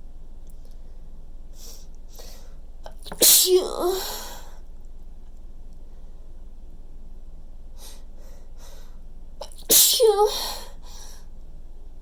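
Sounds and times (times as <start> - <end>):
quiet breaths in: 0.5 - 2.8, 4.0 - 4.8, 5.8 - 6.5, 7.6 - 9.3, 10.3 - 11.6
person sneezing: 3.2 - 4.4, 9.7 - 10.7.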